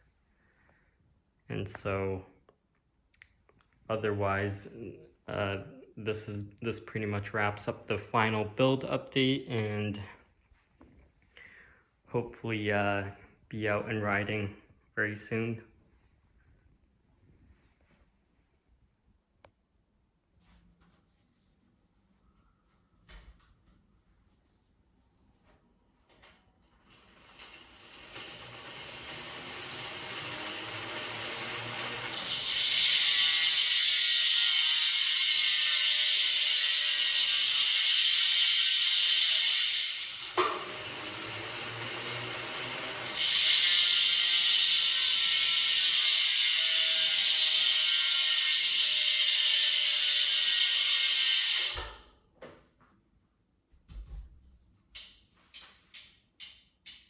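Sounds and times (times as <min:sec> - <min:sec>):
bicycle freehub ticking buzz: 0:26.9 - 0:51.9.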